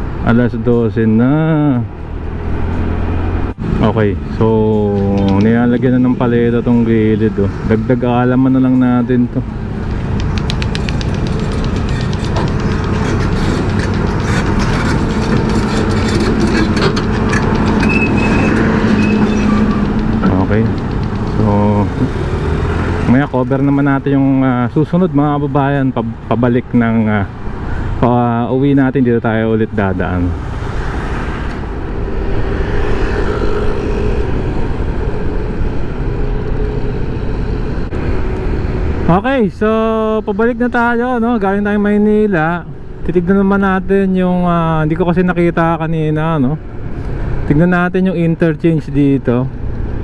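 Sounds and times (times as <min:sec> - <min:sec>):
vehicle engine hum and road noise: 0:00.0 - 0:50.0.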